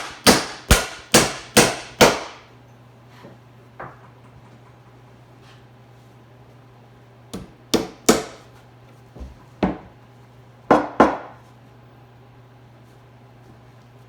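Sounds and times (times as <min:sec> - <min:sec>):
hammer striking nails into wood: 0:00.0 - 0:02.4, 0:07.4 - 0:08.4.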